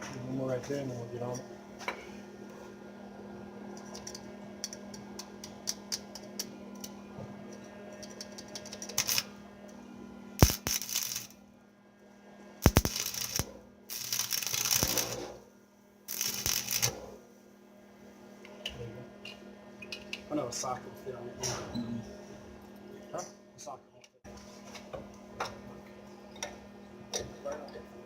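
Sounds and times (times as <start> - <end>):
steady low hum: 0.0 - 23.6
arc welder crackling: 8.2 - 9.4, 10.4 - 11.4, 12.6 - 15.4, 16.1 - 17.2
sharp clicks: 12.6 - 15.1.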